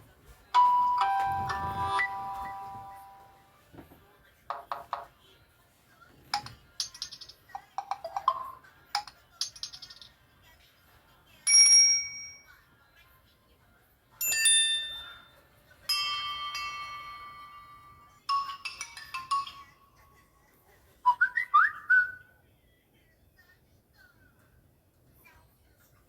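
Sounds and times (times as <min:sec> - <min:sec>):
electronic ringtone chimes: 0:00.6 - 0:03.5.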